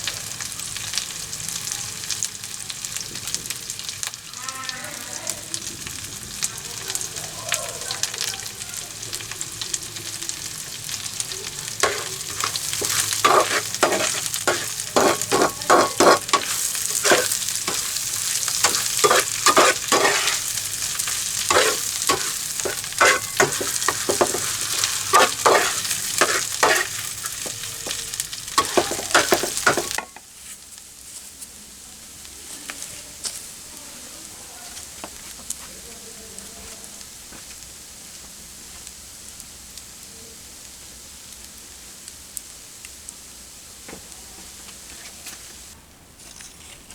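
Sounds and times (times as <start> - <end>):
food sizzling in a pan: 0.0 - 46.9
utensil stirring and scraping: 11.7 - 30.6, 46.2 - 46.9.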